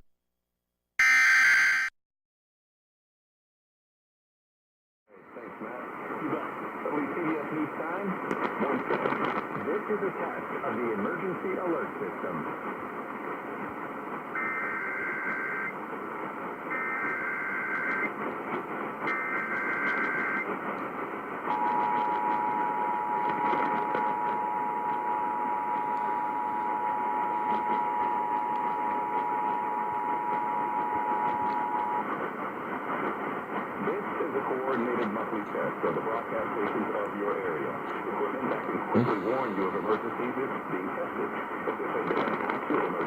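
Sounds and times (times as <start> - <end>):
screeching digital header tones: 1.0 - 1.9, 14.4 - 15.7, 16.7 - 18.1, 19.1 - 20.4
two-tone attention signal buzz: 1.0 - 1.9, 14.4 - 15.7, 16.7 - 18.1, 19.1 - 20.4
radio hiss: 5.1 - 43.0.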